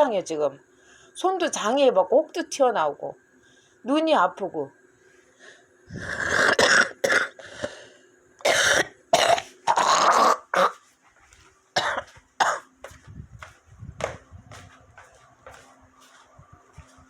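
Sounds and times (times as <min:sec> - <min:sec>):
woman coughing: 0:06.1 - 0:07.4, 0:08.4 - 0:10.8, 0:11.8 - 0:12.7.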